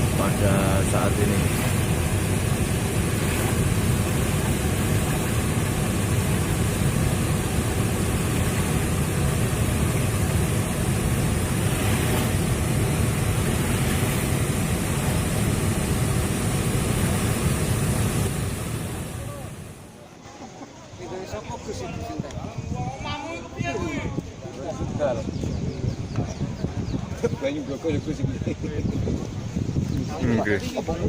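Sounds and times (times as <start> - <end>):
floodwater and surf rushing: 0.0 - 22.2.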